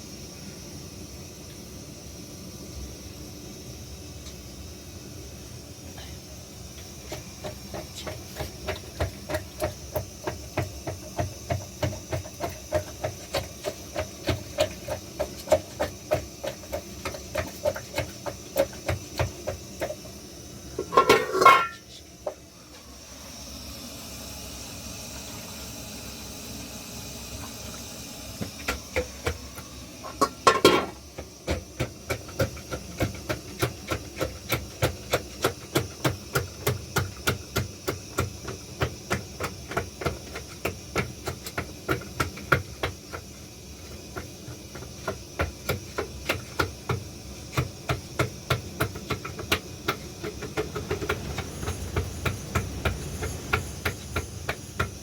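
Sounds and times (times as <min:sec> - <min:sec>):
rhythmic knocking: 0:47.9 - 0:55.0
steady hiss: 0:49.2 - 0:55.0
loud clattering bursts: 0:50.3 - 0:55.0.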